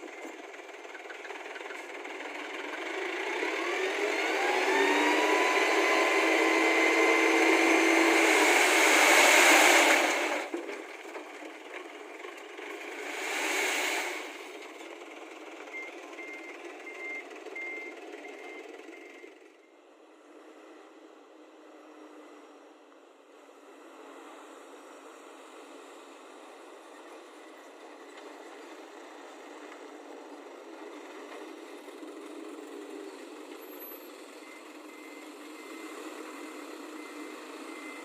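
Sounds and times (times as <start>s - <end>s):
diesel engine revving: 0.0s - 10.6s, 12.2s - 19.5s, 29.0s - 38.0s
reversing alarm beeping: 33.8s - 38.0s.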